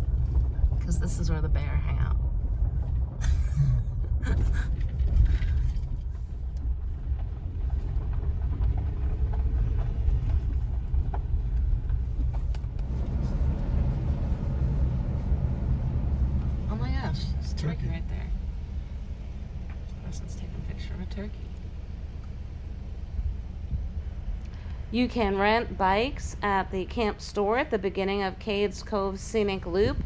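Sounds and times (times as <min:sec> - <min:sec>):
car driving at low speed: 0:00.0 - 0:30.0.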